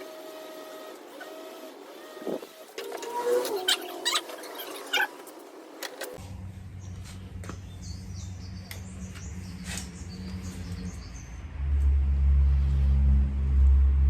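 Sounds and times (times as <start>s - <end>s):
low hum: 2.2s - 14.0s
small birds chirping: 6.8s - 11.4s.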